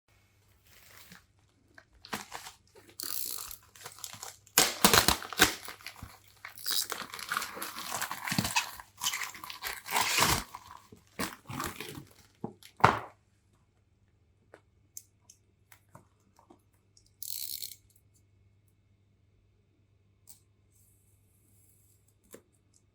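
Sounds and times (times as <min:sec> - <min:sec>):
packaging tearing and crinkling: 0:02.0 - 0:12.4.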